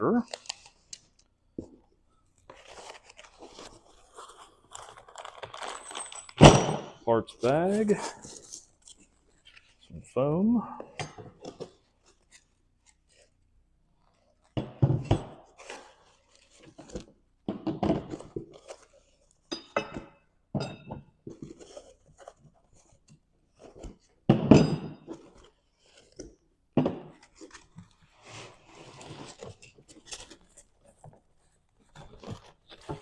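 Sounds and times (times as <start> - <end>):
foam packing material handled: 1.7 - 6.1, 7.4 - 10.1, 27.1 - 33.0.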